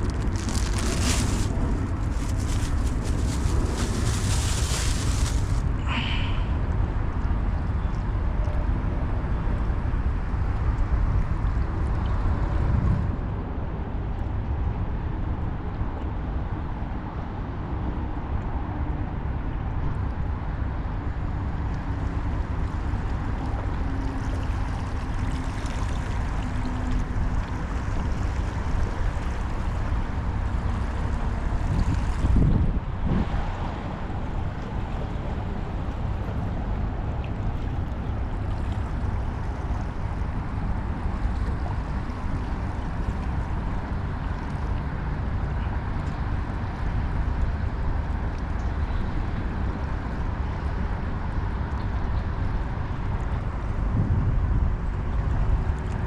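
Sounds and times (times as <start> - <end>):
water rumbling: 0.0 - 7.2, 21.0 - 56.0
low rumble of wind: 0.0 - 56.0.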